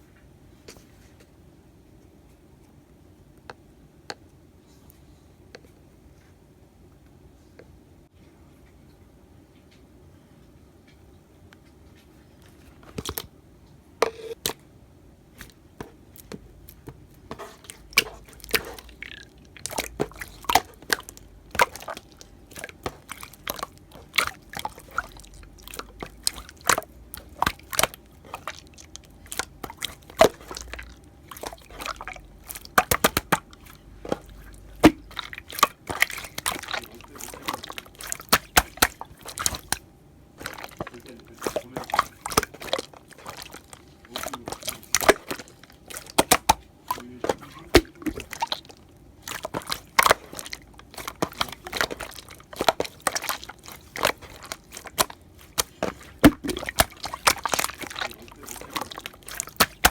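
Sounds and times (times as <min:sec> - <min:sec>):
slime squished by hand: 0:15.4 - 0:39.8, 0:40.4 - 0:59.9.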